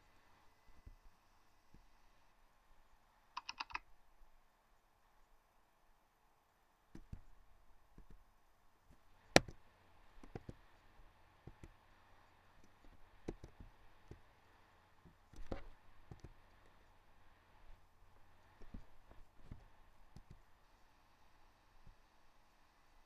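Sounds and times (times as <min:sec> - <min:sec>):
faint clicks and taps: 0:03.4 - 0:03.9, 0:06.9 - 0:08.3, 0:08.9 - 0:17.0, 0:17.6 - 0:20.6.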